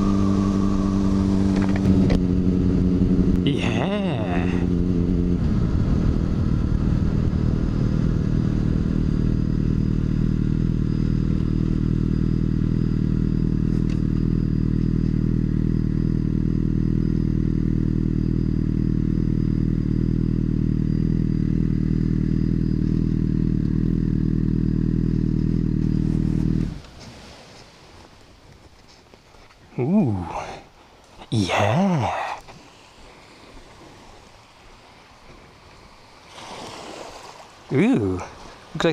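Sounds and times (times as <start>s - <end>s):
motorcycle engine running: 0.0s - 26.8s.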